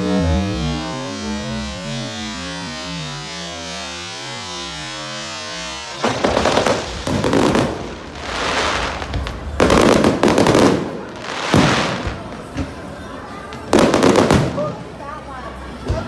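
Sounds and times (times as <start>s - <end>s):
fireworks crackling: 0.0s - 15.2s
firework bang: 4.4s - 12.9s, 13.6s - 14.8s.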